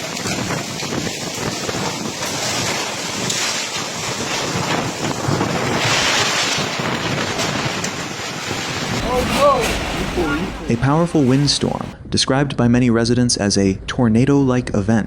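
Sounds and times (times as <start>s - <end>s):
storm wind buffeting microphone: 0.0s - 12.5s.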